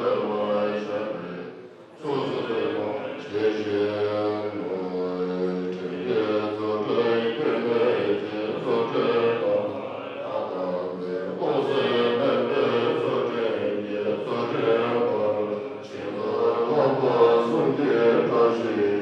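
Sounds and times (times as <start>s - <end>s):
monks chanting in unison: 0.0s - 19.0s.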